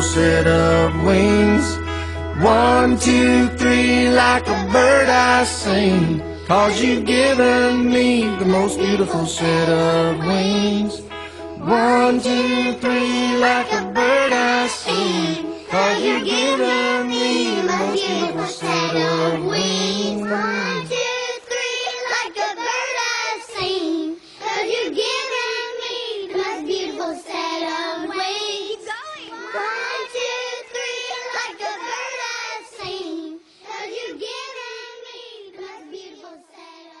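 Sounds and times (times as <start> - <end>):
low bass line: 0.0 - 8.6
light backing music: 0.0 - 21.0
person singing: 0.0 - 21.0.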